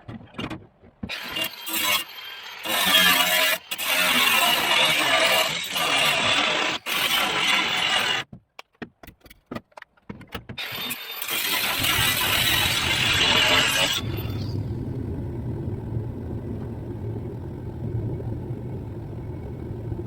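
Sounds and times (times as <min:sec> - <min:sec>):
power tool cutting sheet steel: 0:01.1 - 0:08.3, 0:10.6 - 0:14.6
deep rumble: 0:12.2 - 0:20.0.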